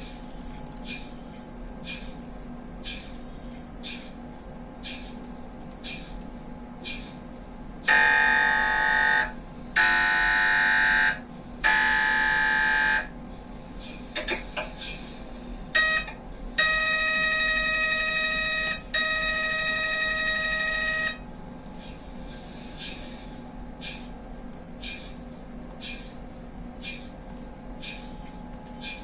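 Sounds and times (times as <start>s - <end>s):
faint steady hum: 0.0s - 29.0s
mri scanner buzzing tones: 7.8s - 13.2s, 15.7s - 21.4s.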